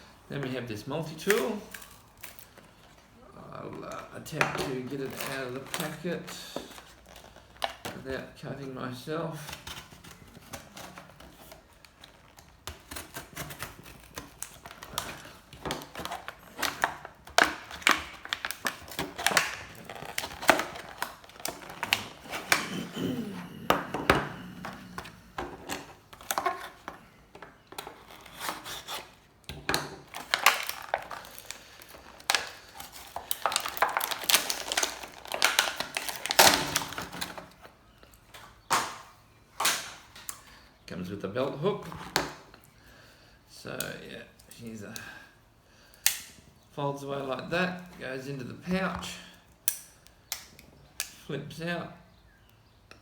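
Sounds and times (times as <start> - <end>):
plastic packaging crinkling: 1.0 - 3.2, 3.8 - 8.0, 9.6 - 29.2, 30.0 - 37.6.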